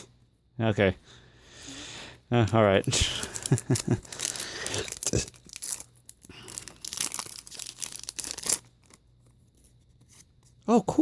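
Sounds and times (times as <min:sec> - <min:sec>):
wrapper tearing and crinkling: 0:02.8 - 0:09.0.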